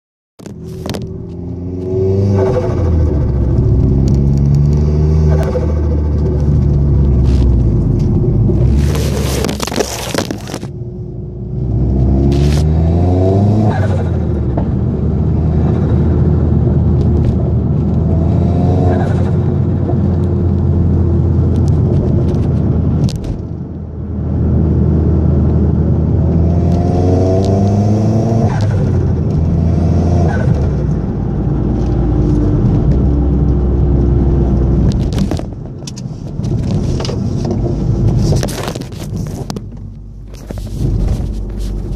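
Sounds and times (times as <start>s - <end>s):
car engine accelerating hard: 24.3s - 35.5s.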